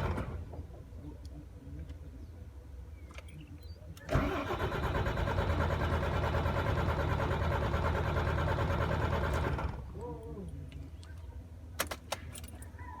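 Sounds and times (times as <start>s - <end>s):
diesel engine running: 4.1s - 9.9s.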